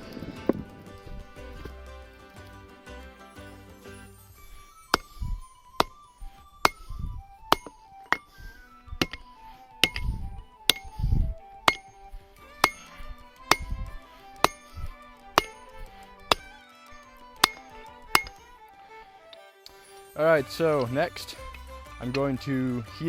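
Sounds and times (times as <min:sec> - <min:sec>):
background music: 0:00.0 - 0:23.0
hammer striking steel on anvil: 0:04.5 - 0:08.4, 0:09.0 - 0:11.0, 0:11.6 - 0:18.4.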